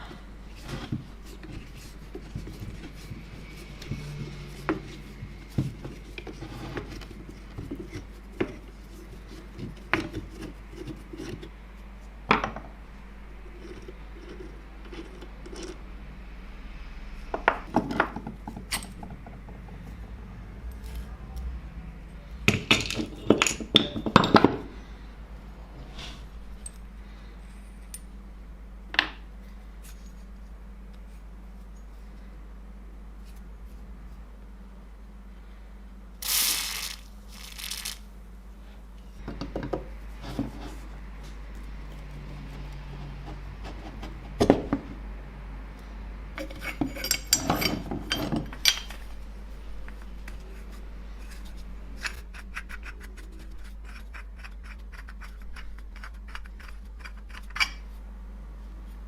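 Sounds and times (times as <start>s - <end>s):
metal drill parts clinking: 46.4s - 49.0s.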